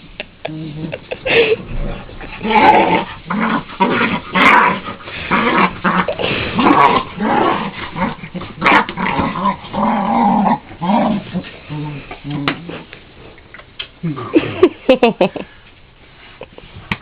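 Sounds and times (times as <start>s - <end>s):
dog play-growling: 0.6s - 12.9s.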